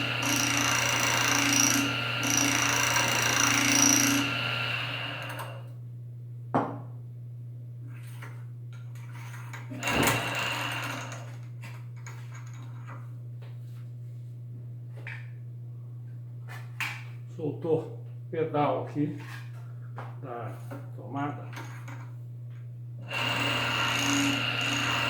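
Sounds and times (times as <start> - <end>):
loud machine working noise: 0.0 - 5.7, 9.7 - 11.4, 23.0 - 25.0
motor humming: 0.0 - 5.7, 9.7 - 11.3, 23.0 - 25.0
knock: 6.6 - 6.9.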